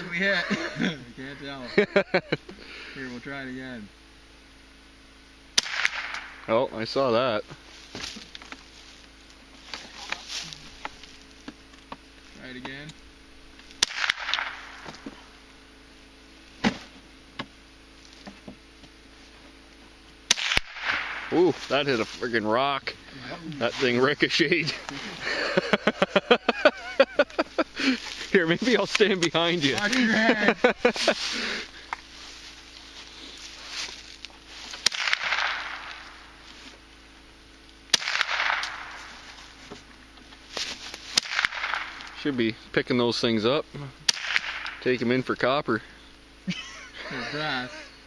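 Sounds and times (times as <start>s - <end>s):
rifle shot with echo: 5.6s - 6.5s, 13.8s - 14.9s, 20.3s - 21.4s, 34.8s - 36.1s, 37.9s - 39.0s, 41.2s - 42.1s, 44.1s - 44.8s
fainter sharp crack: 5.6s - 6.6s, 13.7s - 15.1s, 20.3s - 21.6s, 34.8s - 36.3s, 37.9s - 39.4s, 41.1s - 42.2s, 44.1s - 45.0s.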